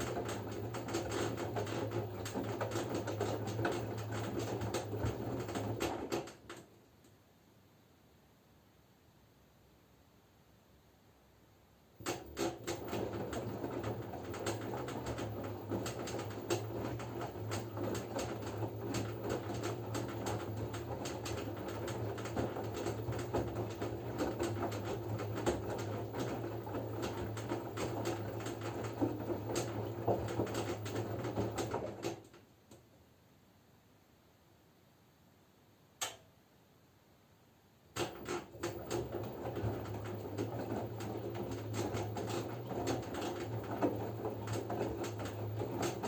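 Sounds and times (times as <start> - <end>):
washing machine motor hum: 0.0 - 6.8, 12.0 - 32.4, 37.9 - 46.0
laundry tumbling clicks: 12.0 - 32.8, 37.9 - 46.0.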